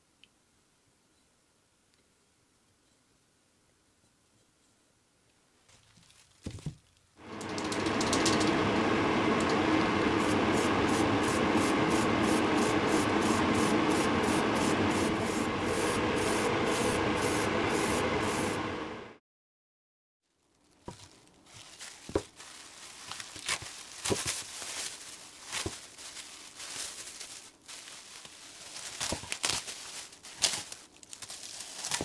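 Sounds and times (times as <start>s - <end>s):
power tool abrading: 7.2s - 19.1s.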